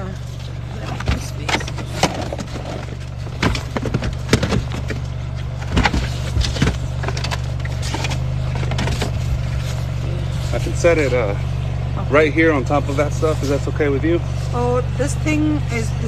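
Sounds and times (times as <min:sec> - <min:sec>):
low engine hum: 0:00.0 - 0:16.0
belongings clunking in car boot: 0:00.6 - 0:09.8.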